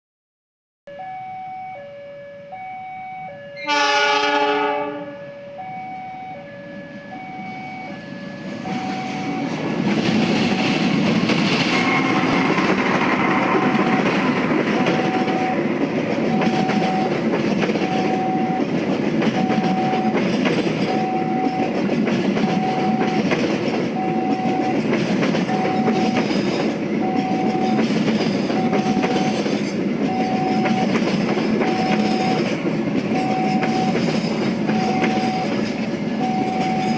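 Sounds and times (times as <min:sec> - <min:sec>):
train horn: 0:03.5 - 0:07.2
train passing with wheel clatter: 0:03.6 - 0:36.9
two-pitch warning beep: 0:16.3 - 0:18.7, 0:19.3 - 0:20.2, 0:20.9 - 0:21.8, 0:22.4 - 0:23.3, 0:23.9 - 0:24.8, 0:27.0 - 0:27.8, 0:28.5 - 0:29.4, 0:30.1 - 0:31.0, 0:31.6 - 0:32.5, 0:33.1 - 0:34.1, 0:34.7 - 0:35.6, 0:36.2 - 0:36.9.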